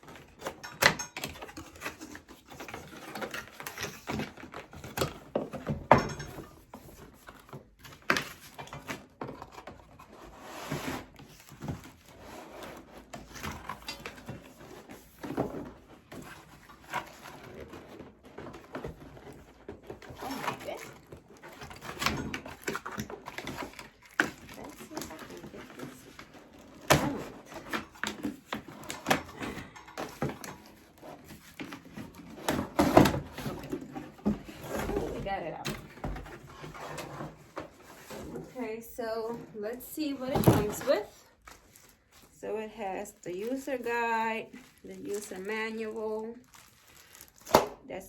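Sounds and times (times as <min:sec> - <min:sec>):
cardboard box rustling and scraping: 0:06.7 - 0:29.0, 0:30.0 - 0:42.4.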